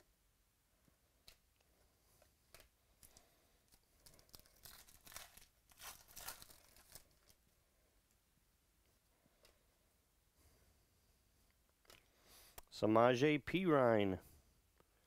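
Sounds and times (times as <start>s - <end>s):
wrapper crinkling and tearing: 3.0s - 7.4s.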